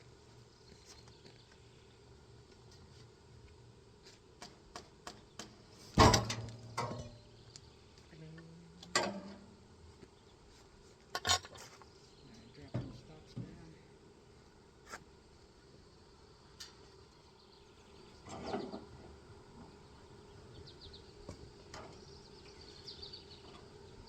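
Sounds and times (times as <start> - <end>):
metal clanks and knocks: 5.1 - 7.2, 8.9 - 9.4, 11.2 - 11.6.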